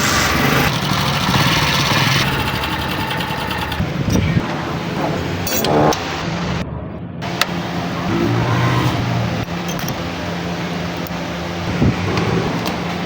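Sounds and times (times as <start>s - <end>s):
motorcycle engine clattering: 0.0s - 4.5s.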